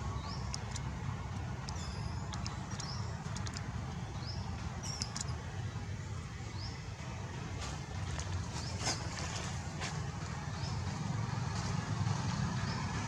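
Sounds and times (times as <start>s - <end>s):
steady low rumble: 0.0s - 8.5s
baby monkey squeaking: 0.3s - 0.8s, 1.7s - 3.6s, 4.8s - 5.3s
sharp clicks: 0.3s - 3.7s, 4.9s - 5.4s.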